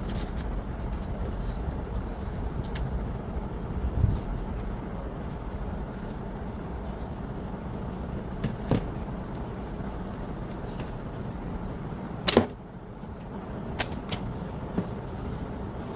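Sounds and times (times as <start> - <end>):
steady hiss: 0.0 - 15.9.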